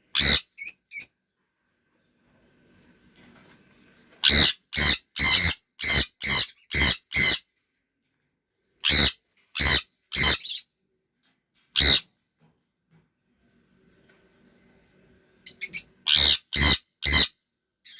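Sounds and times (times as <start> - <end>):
parrot squawking: 0.2 - 1.1, 4.2 - 7.4, 8.8 - 10.6, 11.8 - 12.1, 15.5 - 17.3.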